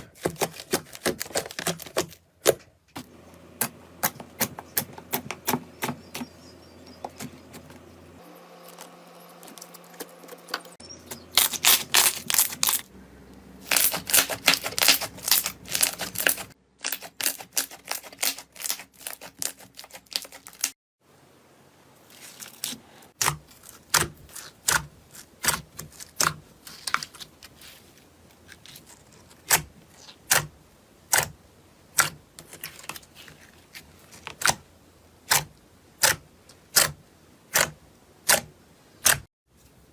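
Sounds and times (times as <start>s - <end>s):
slime crackling and popping: 13.7s - 20.7s.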